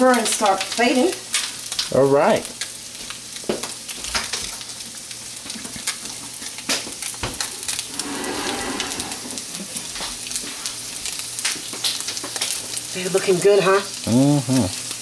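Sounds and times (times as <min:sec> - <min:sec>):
crab cakes sizzling in oil: 0:00.0 - 0:15.0.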